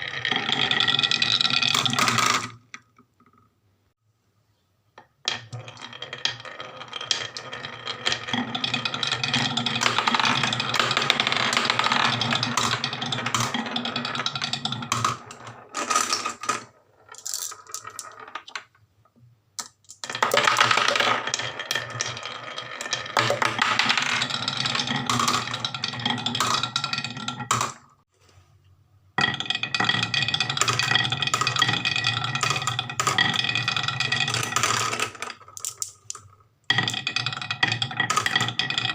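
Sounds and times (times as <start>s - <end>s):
marbles rattling down wooden track: 0.0s - 2.6s, 5.3s - 18.7s, 19.6s - 27.8s, 29.2s - 38.9s.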